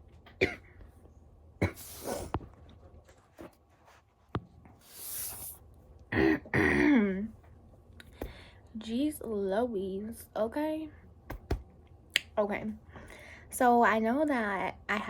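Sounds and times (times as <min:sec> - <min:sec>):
woman coughing: 0:00.4 - 0:00.7, 0:01.6 - 0:02.2, 0:06.1 - 0:07.2.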